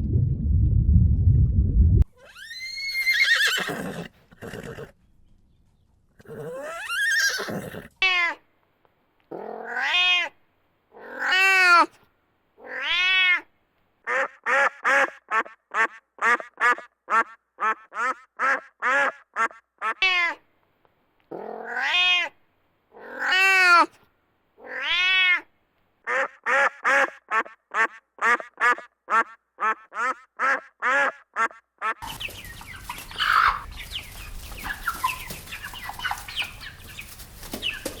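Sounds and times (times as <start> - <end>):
cat meowing: 9.3 - 10.4, 12.6 - 13.4, 21.4 - 22.4, 24.6 - 25.5.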